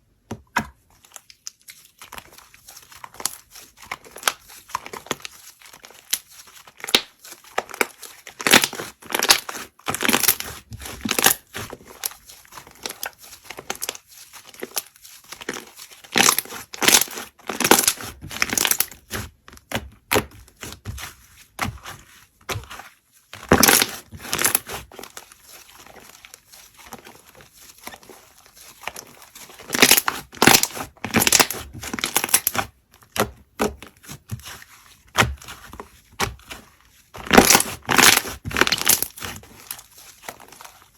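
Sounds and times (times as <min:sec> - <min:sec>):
slime squishing and popping: 0:06.8 - 0:11.6, 0:15.4 - 0:20.8, 0:23.4 - 0:24.9, 0:29.0 - 0:35.5, 0:37.2 - 0:39.7.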